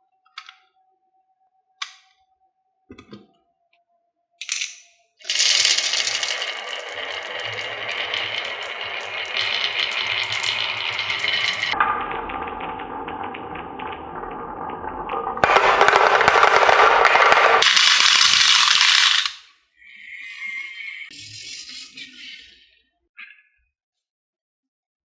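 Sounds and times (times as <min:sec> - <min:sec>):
marbles rattling down a marble run: 0:05.3 - 0:19.4.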